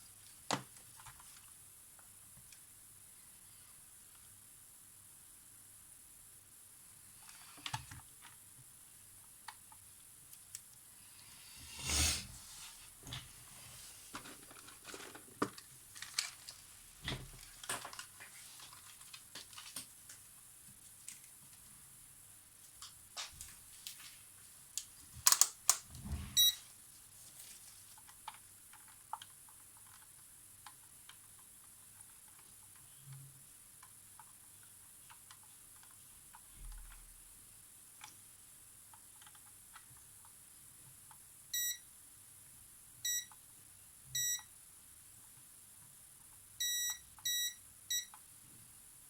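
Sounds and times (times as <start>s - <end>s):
short electronic beeps: 26.4s - 26.6s, 44.2s - 44.4s.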